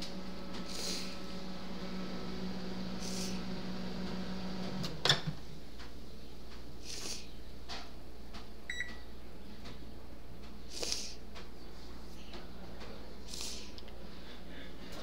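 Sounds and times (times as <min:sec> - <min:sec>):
microwave oven humming: 0:00.0 - 0:05.7, 0:08.7 - 0:09.3.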